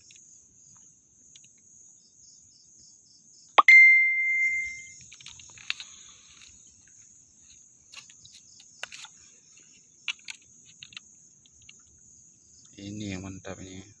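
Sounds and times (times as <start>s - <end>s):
night insects chirring: 0.0s - 3.6s, 4.5s - 14.0s
tone: 3.6s - 5.0s
faint clicks and taps: 5.0s - 12.0s.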